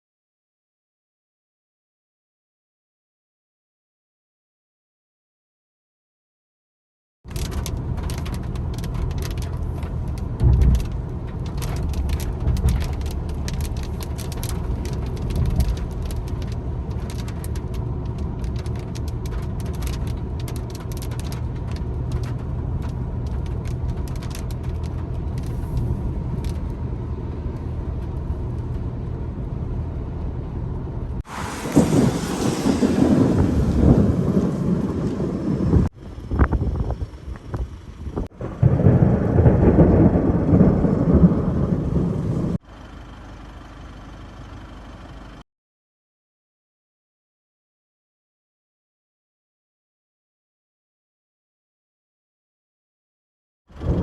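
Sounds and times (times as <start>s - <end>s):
raindrops ticking: 7.3s - 29.2s
low rumble: 7.3s - 44.9s
loud rushing noise: 31.2s - 35.0s.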